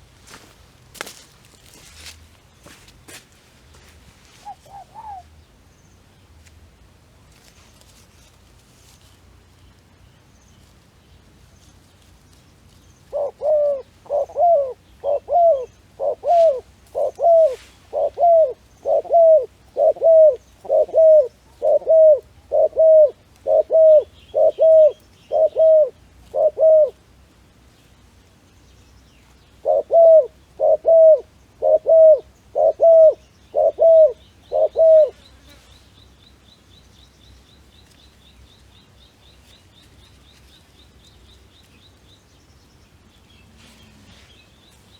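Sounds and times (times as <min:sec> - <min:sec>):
dove cooing: 0:04.4 - 0:05.4, 0:13.1 - 0:27.0, 0:29.6 - 0:35.3.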